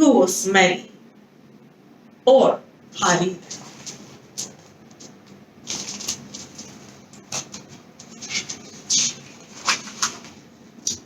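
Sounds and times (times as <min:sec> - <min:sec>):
book rustling and clicks: 0:03.4 - 0:11.0
page turning: 0:03.4 - 0:11.0.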